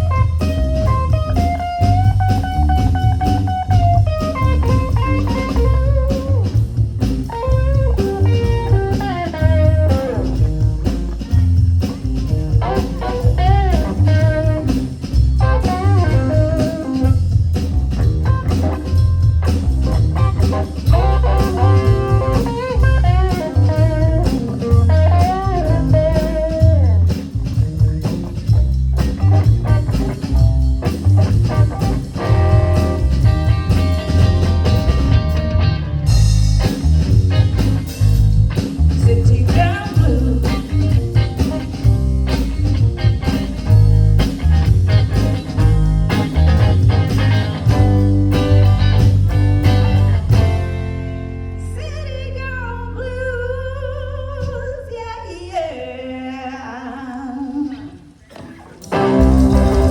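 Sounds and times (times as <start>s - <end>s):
drum kit: 0.0s - 51.6s, 58.3s - 59.9s
blues guitar lead: 0.0s - 54.9s, 57.4s - 59.9s
bass guitar: 0.0s - 55.9s, 57.5s - 59.9s.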